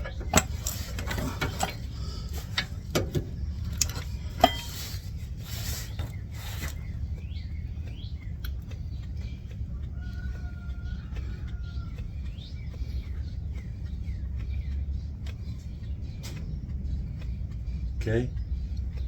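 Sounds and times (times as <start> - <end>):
grease gun metal clicks: 0.0 - 4.9
faint birds chirping: 0.0 - 19.0.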